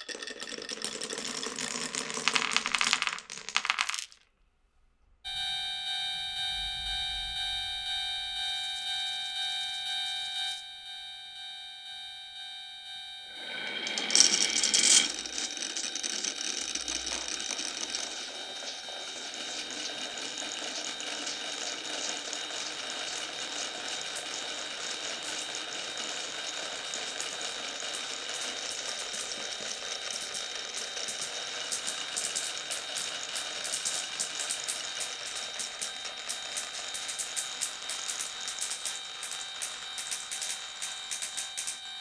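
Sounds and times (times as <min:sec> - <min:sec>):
marbles rolling down marble run: 0:00.0 - 0:04.3, 0:13.4 - 0:41.8.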